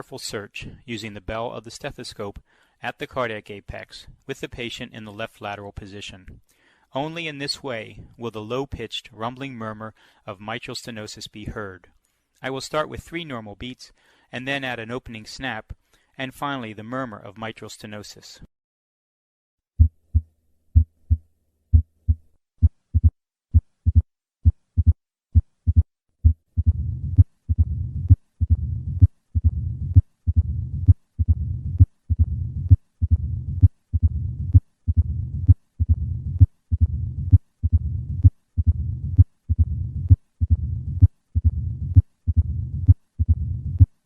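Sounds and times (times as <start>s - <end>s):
heartbeat through stethoscope: 19.8s - 43.9s
low rumbling heart murmur: 23.0s - 25.0s, 25.7s - 43.9s.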